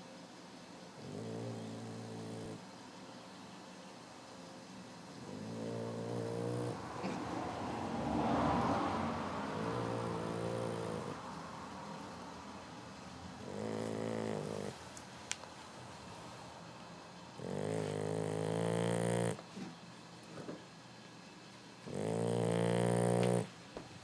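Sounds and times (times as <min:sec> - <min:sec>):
puppy snoring: 0:01.0 - 0:02.7, 0:05.2 - 0:07.2, 0:09.3 - 0:11.2, 0:13.4 - 0:14.8, 0:17.4 - 0:19.6, 0:21.8 - 0:23.6.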